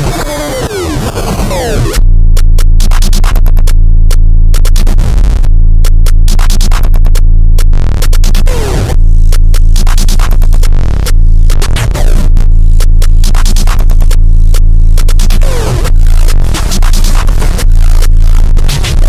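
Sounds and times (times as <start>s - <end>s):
heavy bass: 0.0s - 19.0s
drum machine beat: 2.0s - 19.0s.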